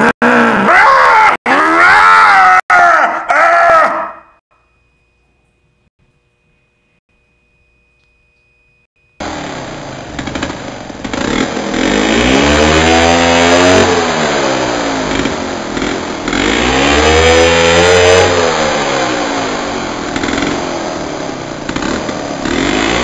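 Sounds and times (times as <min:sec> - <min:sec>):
chainsaw engine revving: 0:09.2 - 0:23.0.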